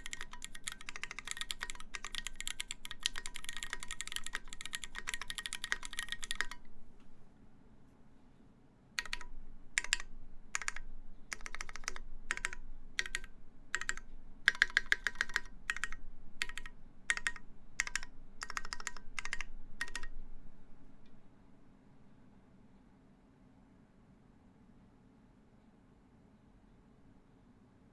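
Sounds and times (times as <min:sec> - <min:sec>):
mechanical keyboard typing: 0:00.0 - 0:07.2, 0:09.0 - 0:20.2.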